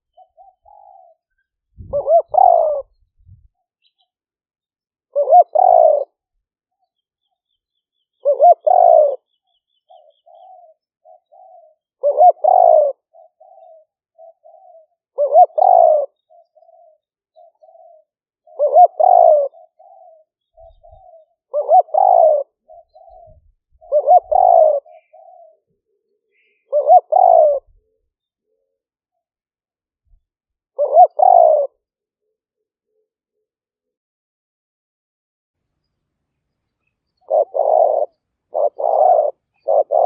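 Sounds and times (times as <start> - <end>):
dove cooing: 0.0 - 3.4, 5.1 - 6.2, 8.2 - 9.3, 9.9 - 28.0, 30.8 - 31.8, 37.2 - 40.0.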